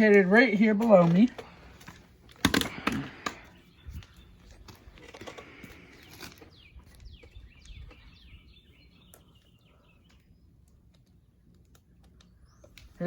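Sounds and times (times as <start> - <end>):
bird chirping: 2.7 - 13.0.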